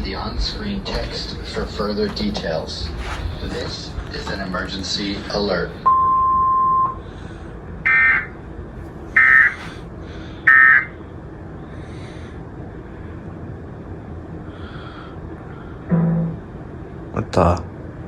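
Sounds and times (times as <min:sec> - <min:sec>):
steady beep tone: 0:05.9 - 0:07.0, 0:15.9 - 0:16.5.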